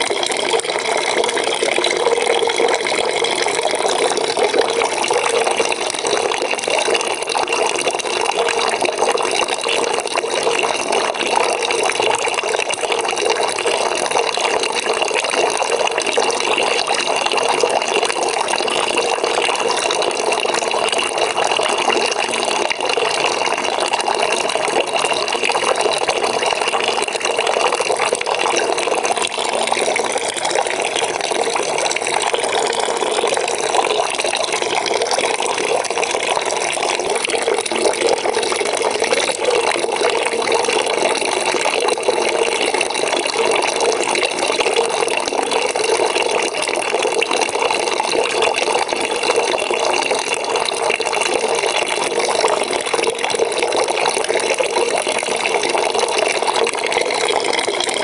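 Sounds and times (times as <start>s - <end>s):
water pouring into a bucket: 0.0s - 58.0s.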